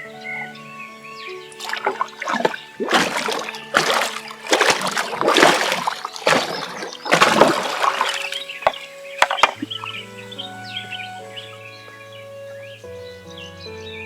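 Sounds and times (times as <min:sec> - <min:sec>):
water splashing by hand: 0:01.5 - 0:10.0.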